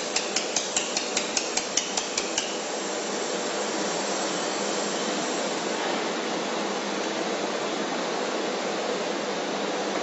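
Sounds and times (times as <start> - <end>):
welding machine hissing: 0.0 - 7.7.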